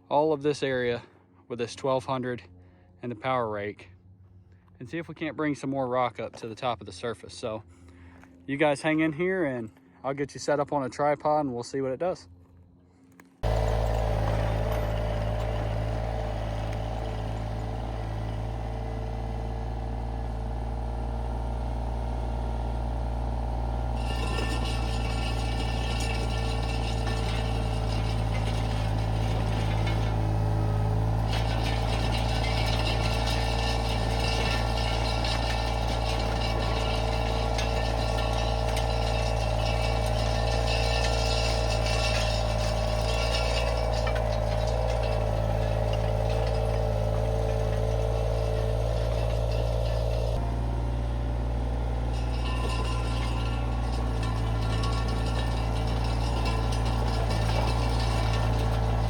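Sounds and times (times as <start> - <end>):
skid steer engine humming: 12.4 - 59.0
rake churning gravel: 13.4 - 59.0.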